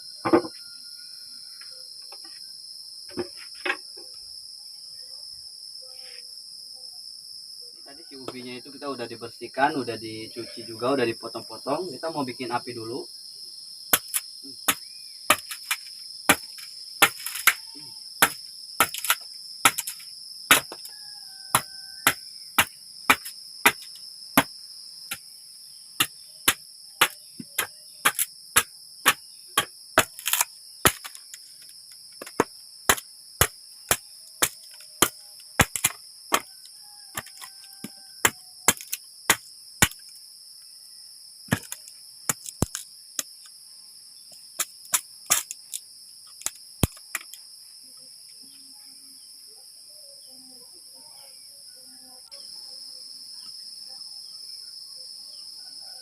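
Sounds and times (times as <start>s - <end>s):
crickets chirping: 0.0s - 56.0s
wood chopping strikes: 13.9s - 20.9s, 21.5s - 24.5s, 26.0s - 31.3s, 32.2s - 36.5s, 37.1s - 40.1s, 41.5s - 43.3s.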